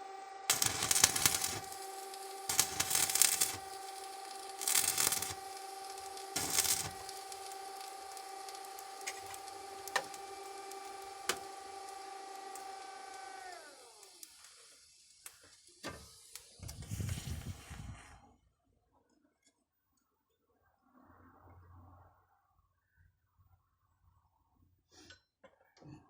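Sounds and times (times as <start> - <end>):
motor spinning down: 0.0 - 15.3
power tool motor running: 0.0 - 17.5
rasping grinding bursts: 0.5 - 13.3.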